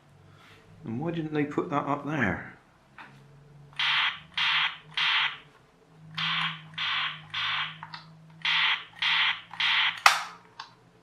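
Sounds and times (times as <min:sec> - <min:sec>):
toy gun electronic shooting: 0:03.8 - 0:05.4, 0:06.2 - 0:10.4.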